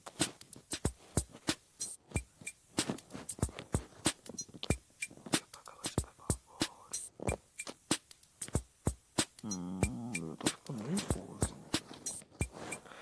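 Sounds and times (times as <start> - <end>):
deep thumping beat: 0.2 - 12.8
sharp clicks and ticks: 1.8 - 12.9.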